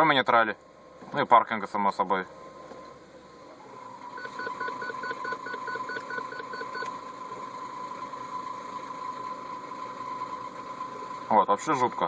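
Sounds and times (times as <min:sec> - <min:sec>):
transmission whining: 0:00.0 - 0:12.0
short beeps: 0:04.1 - 0:06.9.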